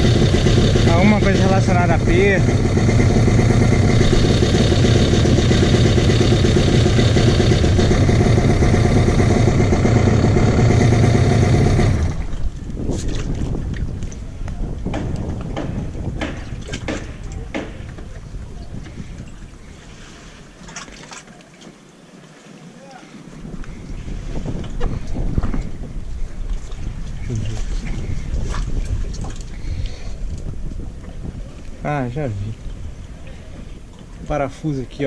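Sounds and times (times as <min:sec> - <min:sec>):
jet ski engine idling: 0:00.0 - 0:12.6.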